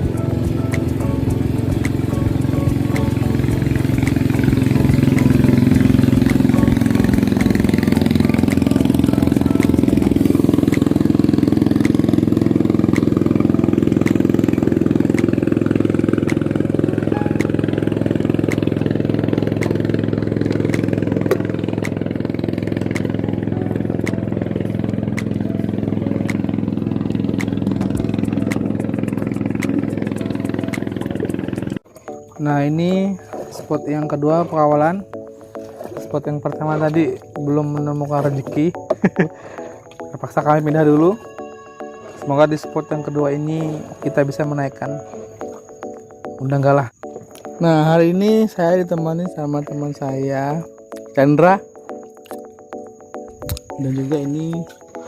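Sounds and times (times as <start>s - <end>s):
small engine running: 0.0s - 31.8s.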